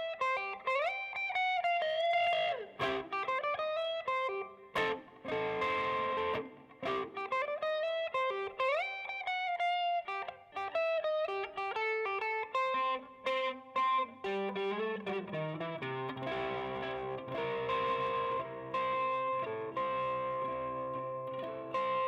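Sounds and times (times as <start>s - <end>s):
plucked guitar melody with effects: 0.0s - 22.0s.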